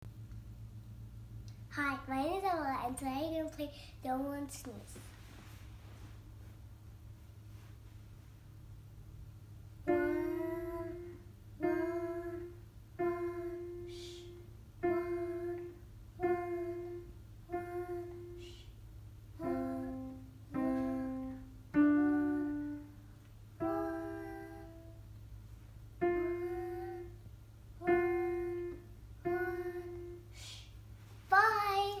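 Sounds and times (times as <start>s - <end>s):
slow piano melody: 9.5s - 18.6s, 19.2s - 30.3s.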